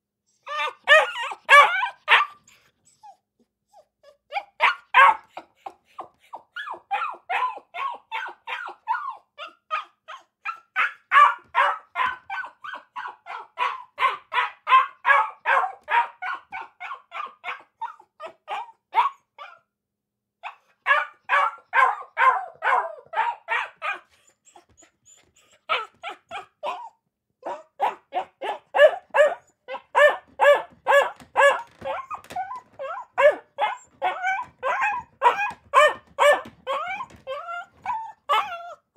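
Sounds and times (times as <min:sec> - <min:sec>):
puppies yapping: 0:00.5 - 0:03.1, 0:04.3 - 0:09.9, 0:10.5 - 0:18.7, 0:27.5 - 0:38.9.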